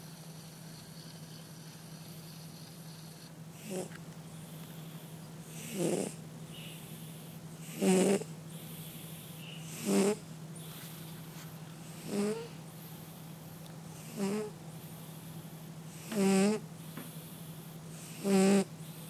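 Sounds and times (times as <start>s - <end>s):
cat snoring: 0.0s - 4.0s, 4.8s - 10.2s, 11.8s - 12.6s, 14.0s - 15.3s, 15.9s - 19.0s
steady low hum: 0.0s - 19.0s.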